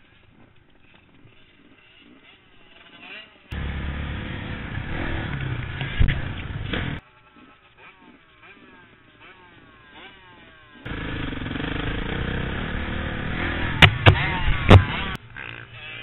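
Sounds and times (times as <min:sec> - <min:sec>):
faint dirt bike accelerating: 0:00.0 - 0:16.0
loud close dirt bike engine: 0:00.1 - 0:16.0
sharp knocks: 0:13.8 - 0:15.2.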